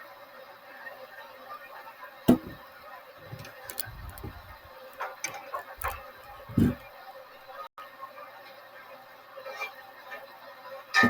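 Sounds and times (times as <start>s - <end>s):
dull thump: 2.3s - 2.6s, 5.8s - 6.8s
light clicks and taps: 3.3s - 6.8s.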